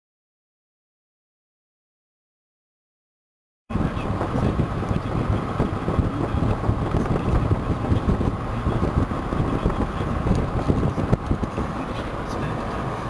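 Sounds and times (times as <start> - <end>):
car road and wind noise: 3.7 - 13.0.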